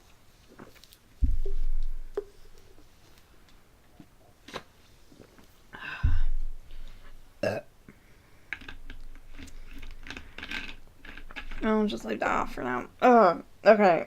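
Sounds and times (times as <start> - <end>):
person burping: 7.4 - 7.7.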